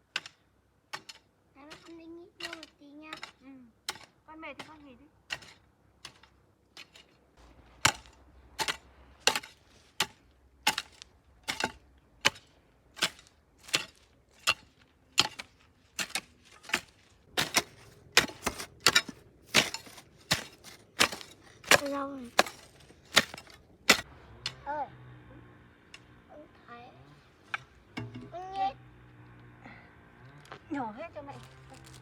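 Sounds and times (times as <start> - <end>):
hoe chopping into soil: 1.8 - 24.1.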